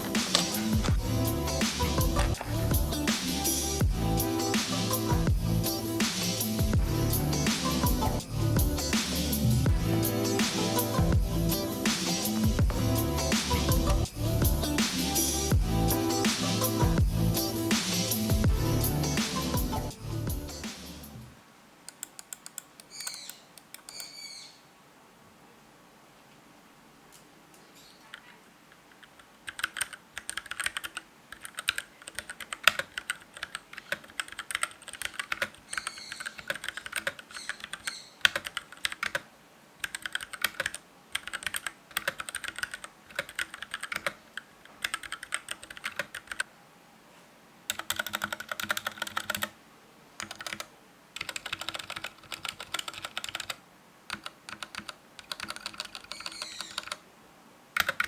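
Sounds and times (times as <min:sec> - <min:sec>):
typing on mechanical keyboard: 0:00.0 - 0:00.9, 0:28.9 - 0:46.5, 0:47.7 - 0:49.5, 0:50.2 - 0:57.0, 0:57.8 - 0:58.0.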